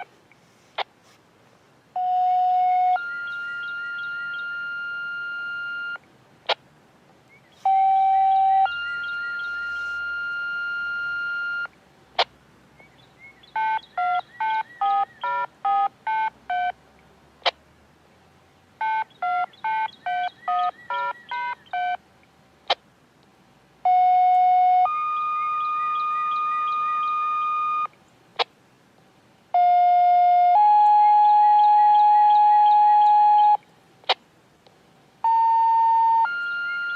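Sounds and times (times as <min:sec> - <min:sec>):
touch-tone beeps: 0:02.0 - 0:06.0, 0:07.7 - 0:11.7, 0:13.6 - 0:16.7, 0:18.8 - 0:22.0, 0:23.9 - 0:27.9, 0:35.2 - 0:36.9
two-tone page: 0:07.6 - 0:11.8, 0:13.6 - 0:16.8.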